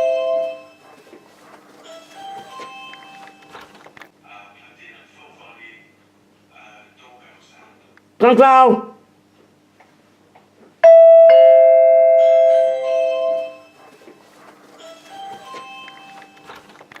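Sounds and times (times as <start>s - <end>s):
two-note doorbell chime: 0.0s - 0.8s, 10.8s - 13.8s.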